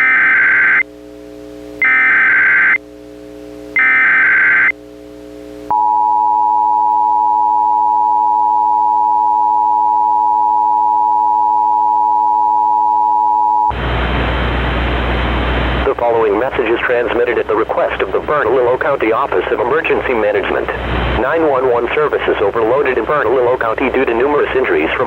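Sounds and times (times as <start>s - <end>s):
buzzy digital data chirps: 0.0s - 0.9s, 1.8s - 2.8s, 3.8s - 4.8s
two-tone alarm signal: 0.0s - 0.9s, 1.8s - 2.8s, 3.8s - 4.8s, 5.7s - 13.7s.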